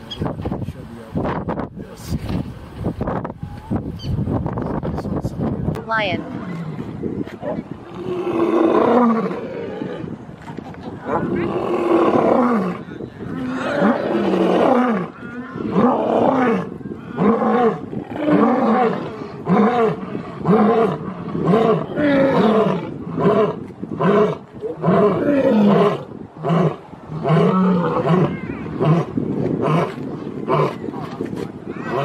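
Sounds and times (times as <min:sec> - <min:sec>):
lion roaring: 0:07.5 - 0:10.1, 0:11.0 - 0:30.8.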